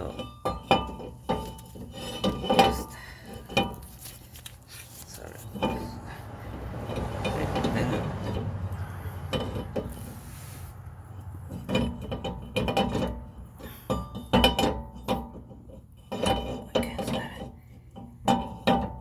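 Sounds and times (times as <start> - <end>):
metallic knocks of brake rotor: 0.0 - 3.9, 5.5 - 10.3, 10.9 - 19.0
rustle of handling: 3.5 - 5.8.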